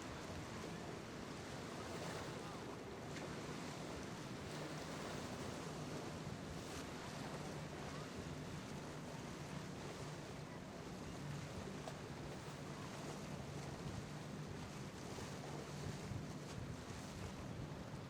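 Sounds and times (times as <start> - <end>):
motorboat engines humming: 0.0 - 18.0
waves: 0.0 - 18.0
wind on microphone: 12.9 - 18.0.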